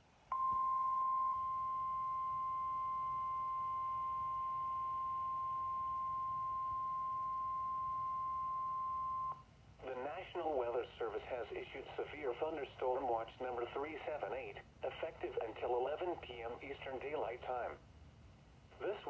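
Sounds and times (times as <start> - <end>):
steady high alarm beep: 0.3 - 9.4.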